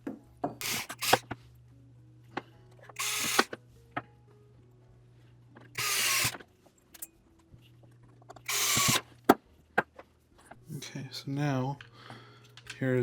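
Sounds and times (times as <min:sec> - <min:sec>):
electric screwdriver running: 0:00.6 - 0:01.2, 0:03.0 - 0:03.5, 0:05.8 - 0:06.4, 0:08.5 - 0:09.1.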